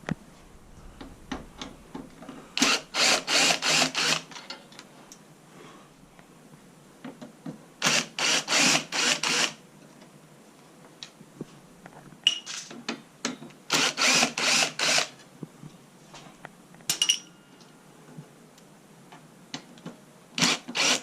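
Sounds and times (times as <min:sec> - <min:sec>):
hand tool rasping strokes: 0:02.6 - 0:04.3.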